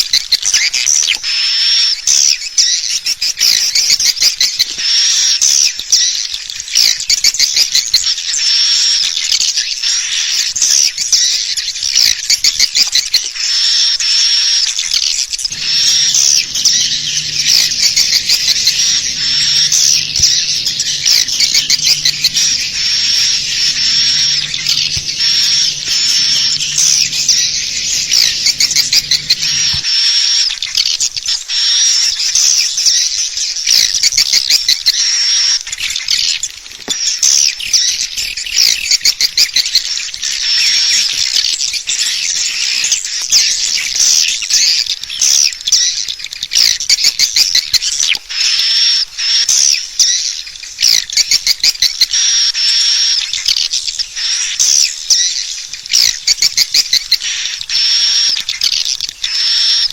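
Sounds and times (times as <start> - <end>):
swiftlets twittering: 14.8 - 30.0
low pulsing hum: 15.4 - 29.9.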